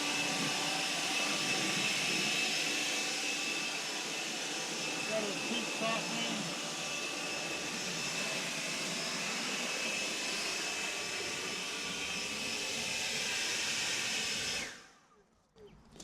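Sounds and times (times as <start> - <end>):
faint high whine: 0.0 - 12.7.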